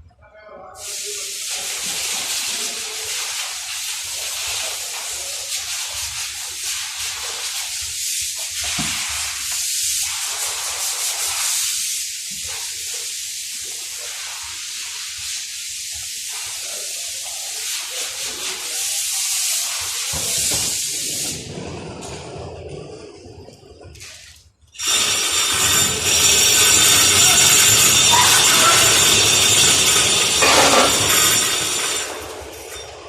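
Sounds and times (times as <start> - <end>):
compressed air hissing: 0.8 - 6.1, 24.8 - 32.6.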